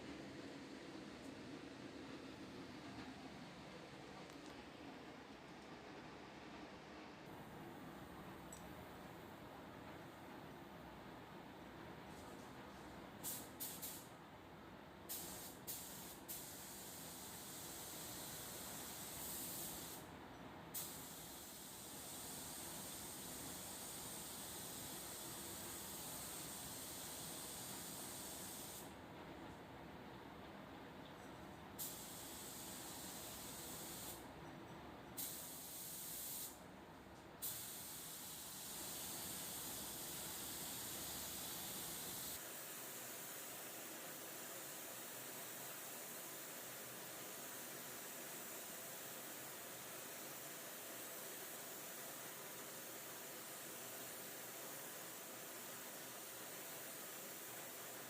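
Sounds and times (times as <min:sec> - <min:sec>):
paint spray gun hissing: 0:13.2 - 0:14.1, 0:15.1 - 0:20.0, 0:20.8 - 0:28.9, 0:31.8 - 0:34.2, 0:35.2 - 0:36.6, 0:37.4 - 0:43.8, 0:44.4 - 0:58.0.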